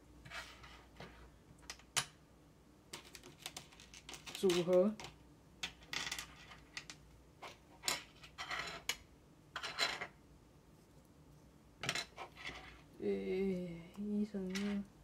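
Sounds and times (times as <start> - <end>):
scraping rustles: 0.2 - 1.4.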